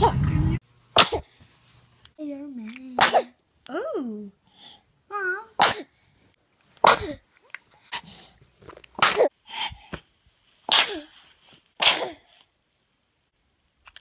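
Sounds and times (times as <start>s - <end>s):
infant sneezing: 1.0s - 1.3s, 3.0s - 3.4s, 5.6s - 5.9s, 6.8s - 7.2s, 9.0s - 9.4s, 10.7s - 11.2s, 11.8s - 12.4s.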